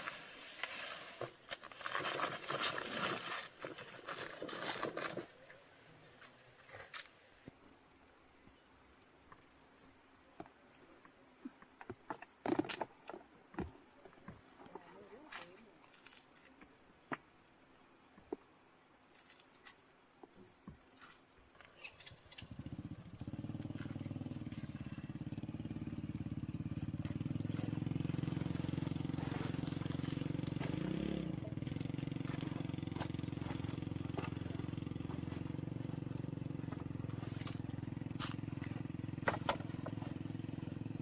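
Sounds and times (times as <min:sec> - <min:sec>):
small engine running: 0:22.1 - 0:41.0.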